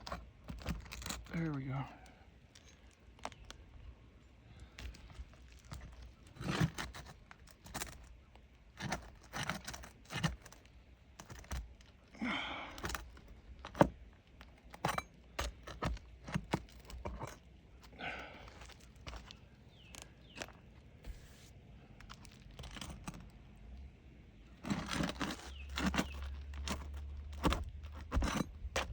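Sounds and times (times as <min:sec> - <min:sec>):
shingles tearing and scraping: 0:00.0 - 0:01.3, 0:04.5 - 0:23.8, 0:24.4 - 0:28.9
shingles being pried up: 0:24.6 - 0:28.9.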